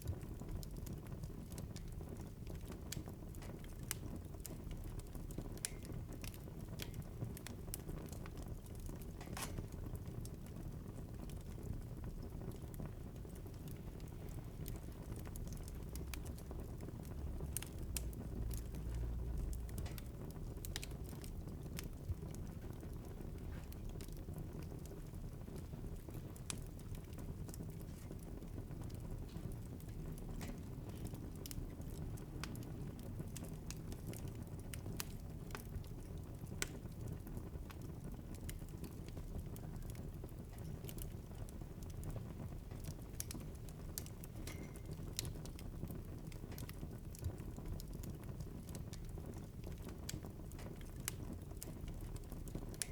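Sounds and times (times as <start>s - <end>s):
wood fire crackling: 0.0s - 52.9s.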